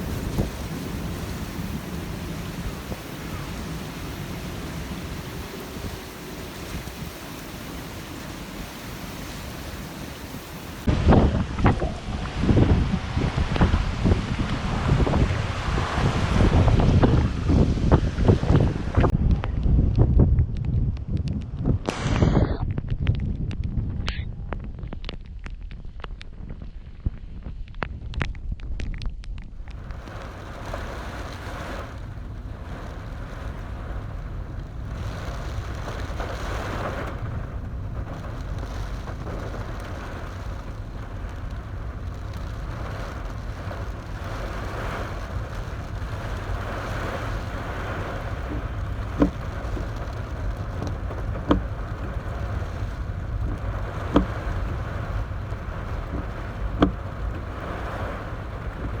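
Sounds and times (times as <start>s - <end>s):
heavy rain on car: 0.0s - 19.1s, 29.6s - 59.0s
car driving rumble: 0.0s - 19.7s, 29.5s - 59.0s.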